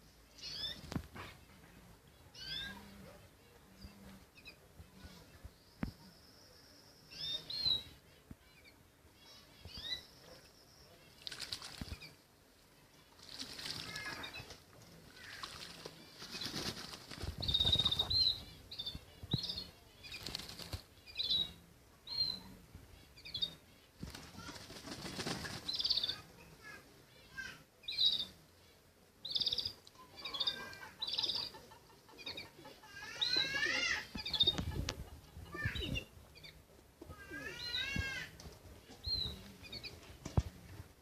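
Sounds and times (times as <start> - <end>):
pigeon wings flapping: 15.6 - 17.8, 20.2 - 20.9, 24.1 - 25.7.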